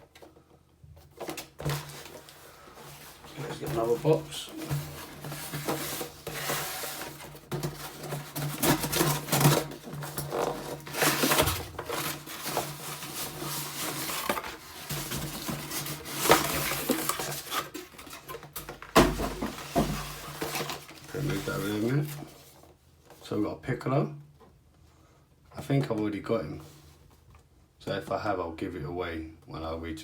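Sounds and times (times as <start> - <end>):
plastic packaging crinkling: 1.0 - 22.3
cardboard box being opened: 1.1 - 22.6.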